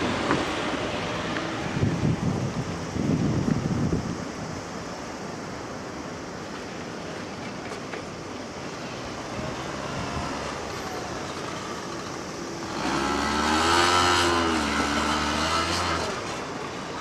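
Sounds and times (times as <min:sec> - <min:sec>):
vehicle passing by: 0:09.4 - 0:16.6.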